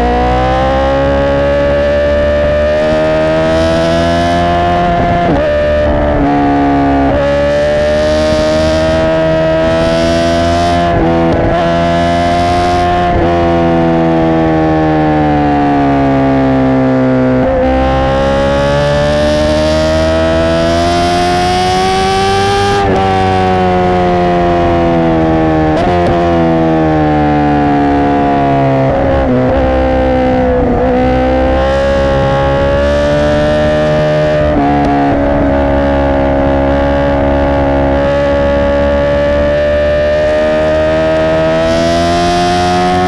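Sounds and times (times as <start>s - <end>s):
motorcycle engine revving: 0.0s - 43.0s.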